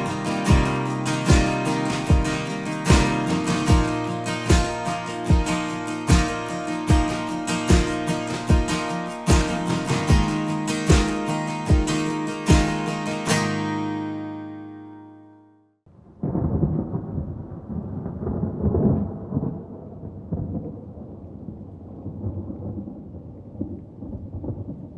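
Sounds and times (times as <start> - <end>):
acoustic guitar chord strummed: 0.0 - 15.6
thunder rumbling: 16.0 - 24.9.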